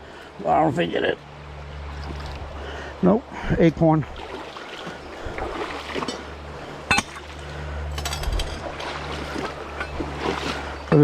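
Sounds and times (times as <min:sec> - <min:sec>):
wind: 0:00.0 - 0:11.0
river water rushing: 0:04.0 - 0:11.0
metal shovel striking rocks: 0:06.9 - 0:07.2, 0:07.9 - 0:08.6.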